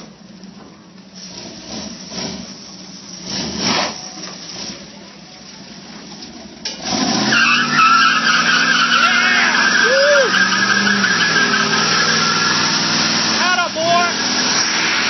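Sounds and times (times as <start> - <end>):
engine revving: 1.2 - 5.1, 6.7 - 15.0
tyres squealing: 6.9 - 15.0.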